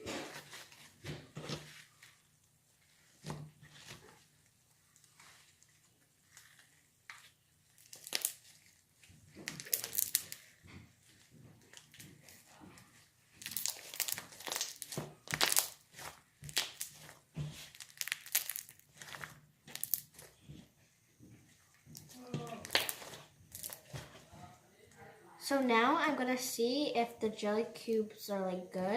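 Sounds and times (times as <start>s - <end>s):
slime crackles and squishes: 0.0s - 20.6s, 21.8s - 24.3s.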